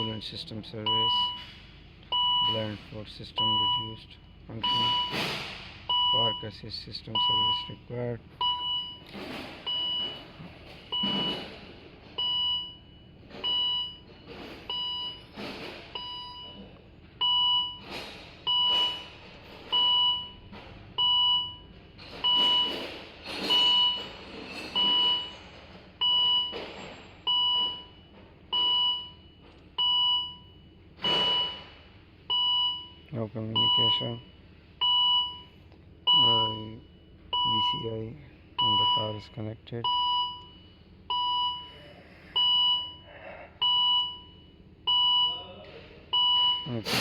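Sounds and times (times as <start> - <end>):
dashboard warning chime beeping: 0.0 - 1.5, 2.1 - 5.3, 5.9 - 10.3, 12.2 - 15.3, 15.9 - 17.8, 19.7 - 22.8, 24.8 - 25.4, 26.0 - 26.6, 27.3 - 31.7, 32.3 - 41.7, 42.4 - 45.5, 46.1 - 46.9.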